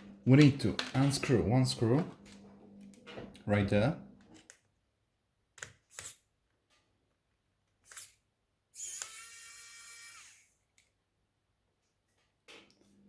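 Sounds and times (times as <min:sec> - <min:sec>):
electric screwdriver whirring: 0:08.8 - 0:10.5.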